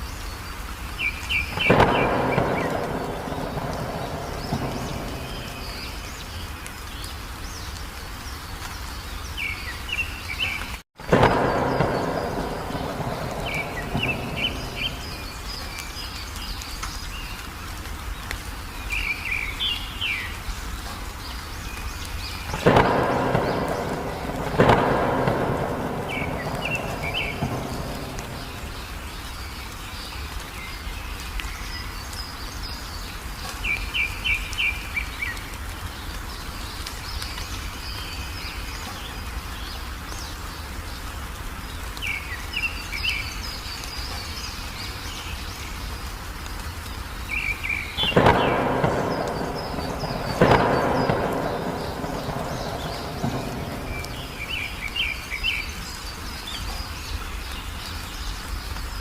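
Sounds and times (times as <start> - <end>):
small birds chirping: 0.0 - 59.0
steady rain: 0.0 - 59.0
thunderclaps rumbling: 1.4 - 6.7, 11.0 - 16.6, 22.1 - 29.8, 47.3 - 56.8.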